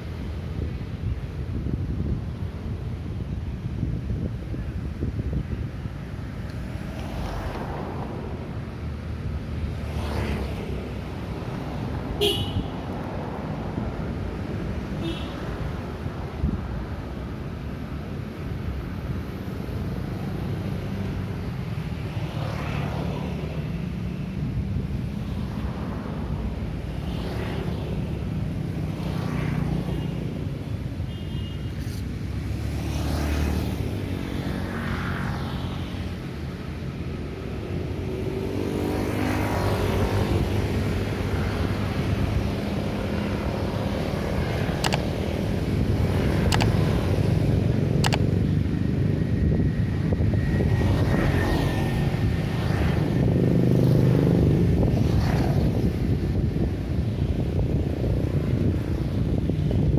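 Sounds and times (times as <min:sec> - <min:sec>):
car and motorcycle engines rumbling: 0:00.0 - 0:59.9
sharp clicks: 0:44.8 - 0:45.1, 0:46.4 - 0:46.8, 0:48.0 - 0:48.3.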